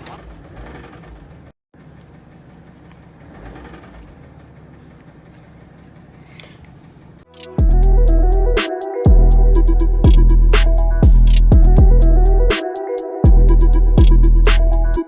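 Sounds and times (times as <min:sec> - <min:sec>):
diesel engine knocking: 0:00.0 - 0:07.3
loud music: 0:07.3 - 0:15.0.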